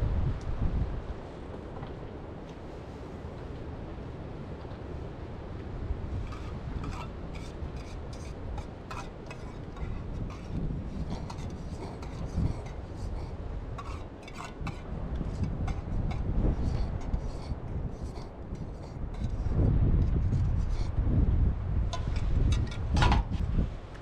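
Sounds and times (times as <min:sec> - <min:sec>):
steady low rumble: 0:05.6 - 0:24.0
utensils scraping cookware: 0:06.2 - 0:20.9, 0:21.9 - 0:23.4.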